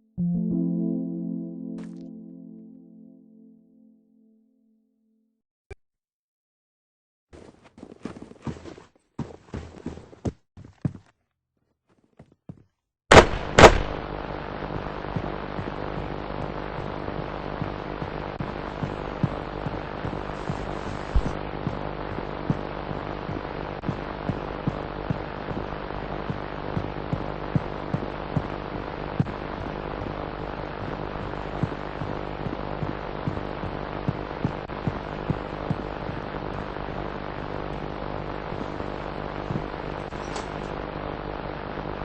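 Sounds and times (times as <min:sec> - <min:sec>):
electrical hum: 0:13.1 - 0:42.0
static hiss: 0:13.6 - 0:42.0.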